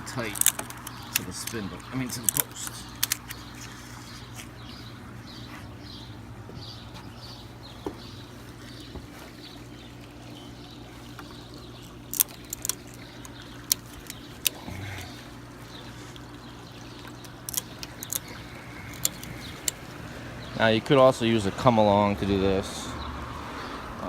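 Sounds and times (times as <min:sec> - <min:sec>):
steady low hum: 0:00.0 - 0:22.3
ratchet strap clicking: 0:00.3 - 0:03.4, 0:12.1 - 0:14.6, 0:17.5 - 0:18.3, 0:18.9 - 0:19.8.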